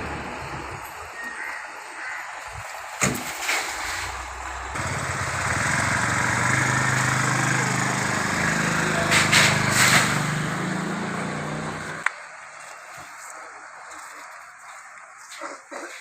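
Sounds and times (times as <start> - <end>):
chainsaw engine running: 4.7 - 12.0.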